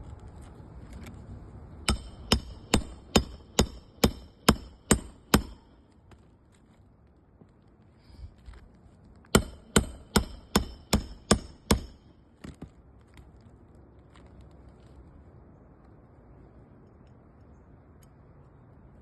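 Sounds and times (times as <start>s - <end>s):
hammer striking metal: 1.9s - 5.7s, 9.4s - 12.1s.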